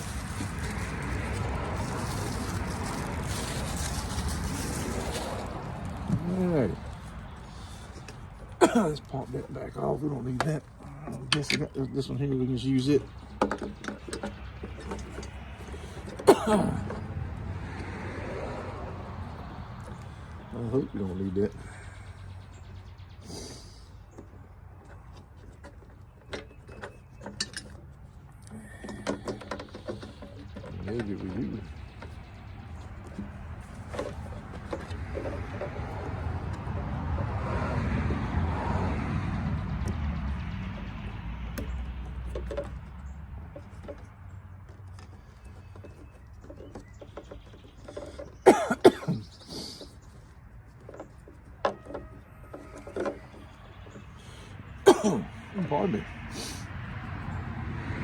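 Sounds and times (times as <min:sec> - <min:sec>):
passing vehicle rumble: 0:00.0 - 0:58.0
man coughing: 0:08.6 - 0:09.0, 0:16.2 - 0:16.9, 0:48.4 - 0:49.7, 0:54.8 - 0:55.3.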